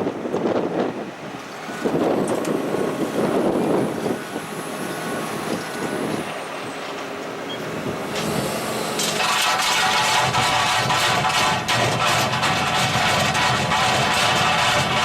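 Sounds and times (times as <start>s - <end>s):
heavy stone saw running: 8.0s - 15.0s.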